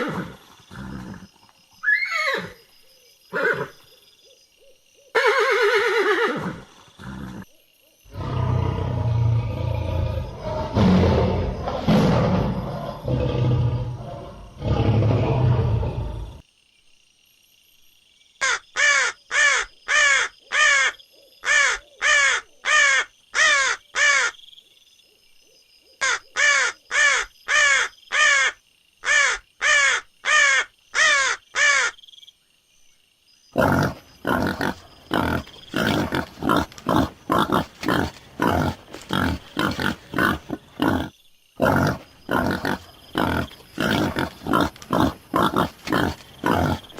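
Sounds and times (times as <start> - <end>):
animal roaring: 8.1 - 16.4, 33.6 - 46.9.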